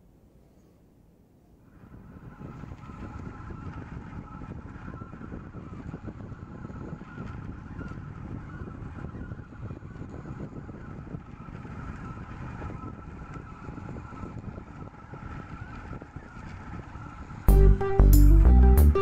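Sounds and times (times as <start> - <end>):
low rumble: 17.5 - 19.0.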